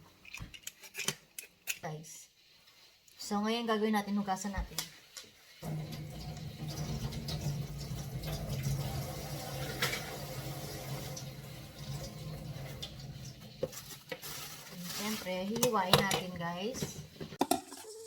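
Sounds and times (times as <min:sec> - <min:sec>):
water running from a tap: 0:05.6 - 0:13.6.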